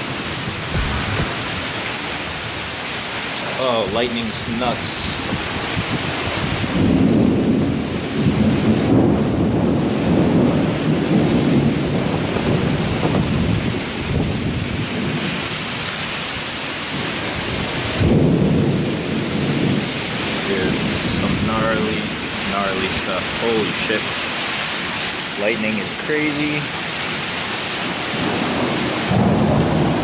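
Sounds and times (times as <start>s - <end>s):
heavy rain pouring: 0.0s - 30.0s
thunder rumbling: 0.1s - 3.6s, 5.1s - 15.2s, 28.2s - 30.0s
thunder crack: 0.4s - 3.5s, 28.2s - 30.0s.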